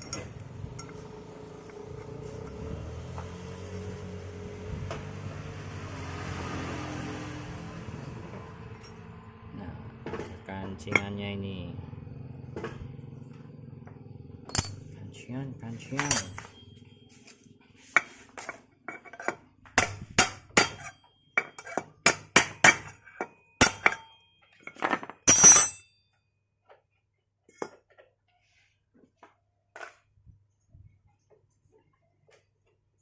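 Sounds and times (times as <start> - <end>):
metal parts clinking: 0.0 - 1.0, 14.5 - 14.9, 15.8 - 16.8, 22.8 - 25.9.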